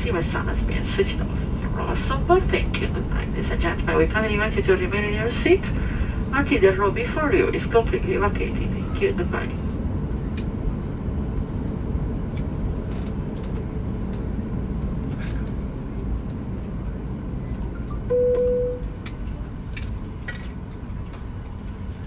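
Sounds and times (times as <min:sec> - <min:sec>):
low cabin rumble: 0:00.0 - 0:22.0
cabin chime: 0:18.1 - 0:18.9.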